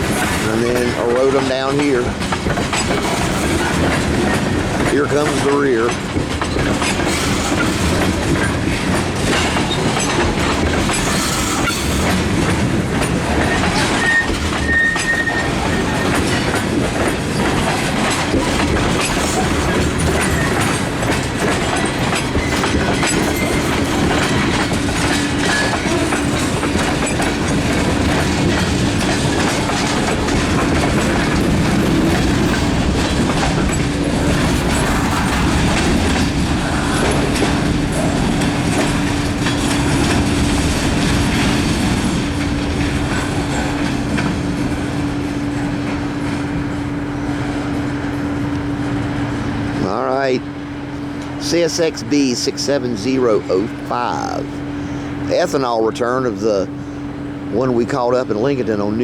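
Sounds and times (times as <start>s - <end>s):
train wheels clattering: 0.0s - 59.0s
high wheel squeal: 9.4s - 12.2s, 13.4s - 40.5s.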